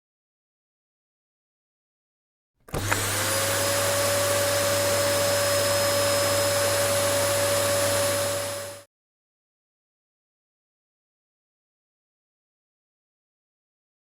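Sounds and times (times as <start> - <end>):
electric motor whining: 2.7 - 8.8.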